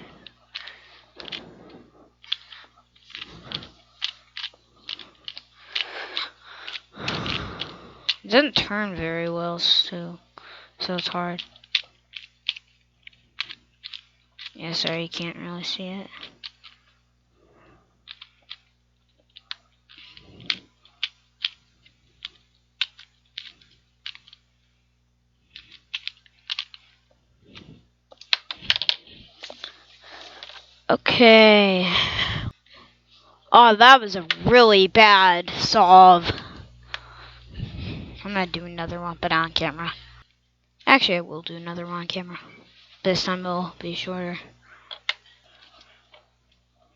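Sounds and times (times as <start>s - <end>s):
cube scraping swishes: 0.0s - 8.4s, 25.4s - 30.6s
plastic puzzle cube clacking: 0.5s - 8.2s, 11.0s - 15.3s, 18.1s - 18.7s, 19.3s - 24.4s, 25.4s - 29.7s.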